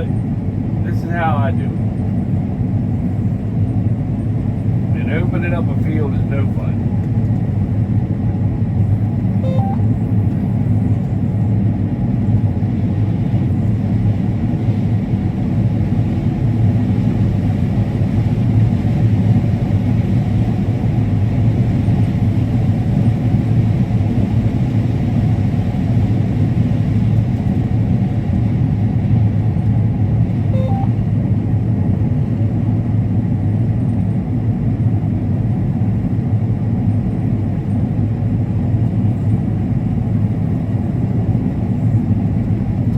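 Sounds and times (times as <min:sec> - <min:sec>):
faint short beeps: 0:09.4 - 0:10.0, 0:30.6 - 0:31.0
combine harvester rumbling: 0:26.4 - 0:32.2.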